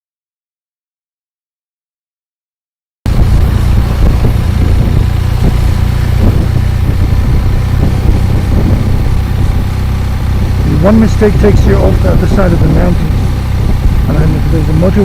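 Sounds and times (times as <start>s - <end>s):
motorcycle engine running: 3.1s - 15.0s.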